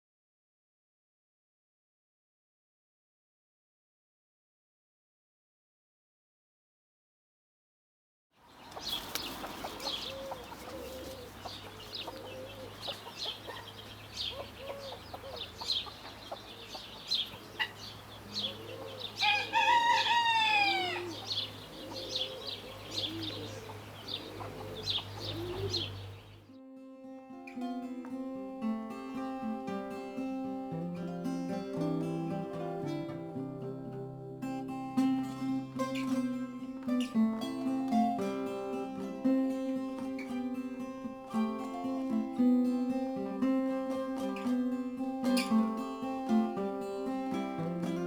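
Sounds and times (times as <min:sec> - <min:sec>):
chickens clucking: 0:08.5 - 0:26.4
acoustic guitar music: 0:08.7 - 0:19.2, 0:20.0 - 0:48.0
rooster crowing: 0:09.8 - 0:16.0, 0:18.4 - 0:25.9.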